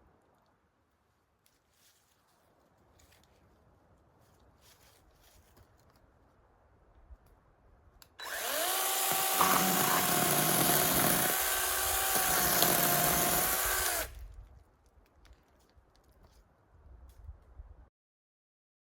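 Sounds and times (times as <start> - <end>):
noisy rasp: 8.2 - 14.1
power tool motor whining: 8.2 - 14.2.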